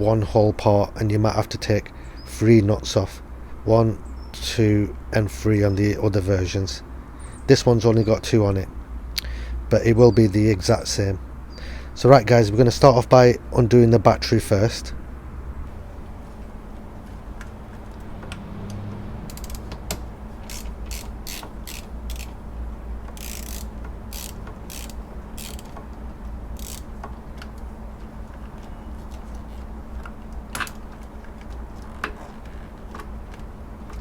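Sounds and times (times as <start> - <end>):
ratchet wrench clicking: 19.3 - 22.4, 23.1 - 25.8, 26.5 - 27.1.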